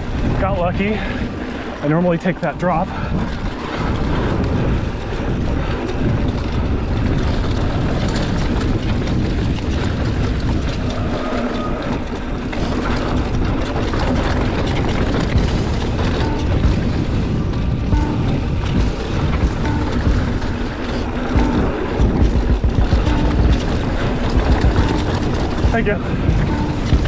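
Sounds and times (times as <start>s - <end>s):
wind buffeting microphone: 0.0s - 27.0s
bike knocks and rattles: 15.3s - 27.0s.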